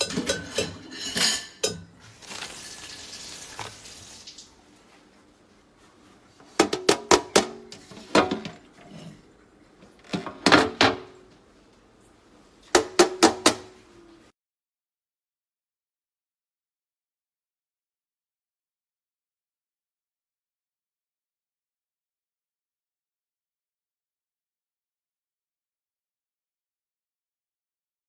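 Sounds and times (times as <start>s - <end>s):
kitchenware clattering: 0.0s - 4.5s, 6.4s - 11.4s, 12.7s - 14.1s.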